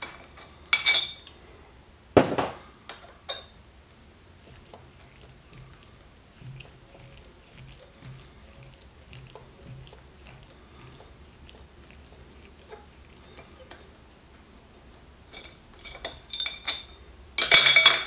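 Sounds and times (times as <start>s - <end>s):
metal tools clinking together: 0.0s - 1.4s, 2.2s - 3.5s, 15.3s - 18.0s.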